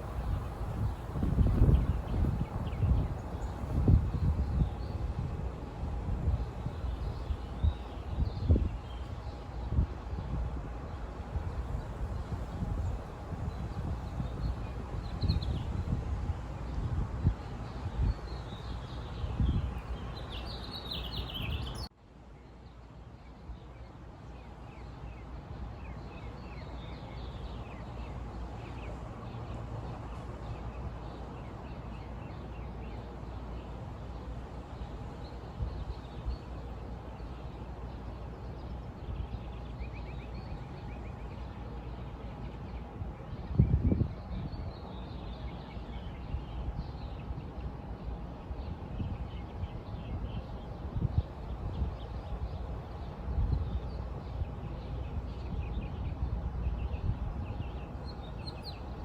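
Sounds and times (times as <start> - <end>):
outdoor background noise: 0.0 - 59.0
small birds chirping: 17.6 - 21.9, 24.4 - 59.0.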